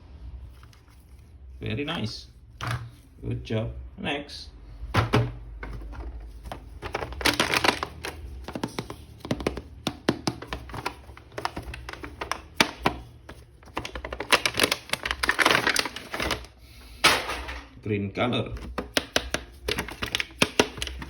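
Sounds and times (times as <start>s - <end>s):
plastic packaging crinkling: 5.6s - 9.6s, 10.3s - 16.6s, 18.8s - 21.0s
plastic clicks and taps: 8.5s - 13.0s, 18.6s - 21.0s.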